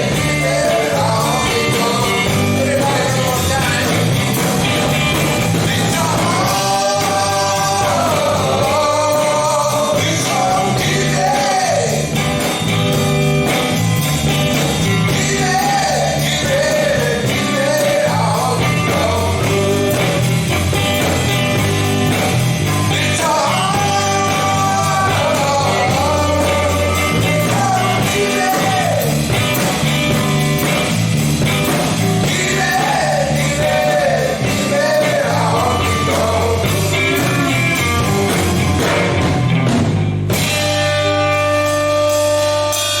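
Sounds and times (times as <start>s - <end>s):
lead singer singing: 0.0s - 12.2s, 15.0s - 20.4s, 22.9s - 29.6s, 31.8s - 39.3s
rock band playing: 0.0s - 43.0s.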